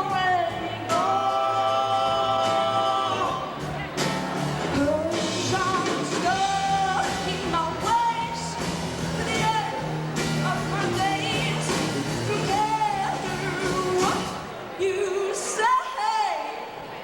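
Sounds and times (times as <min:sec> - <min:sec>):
live band playing: 0:00.0 - 0:15.0.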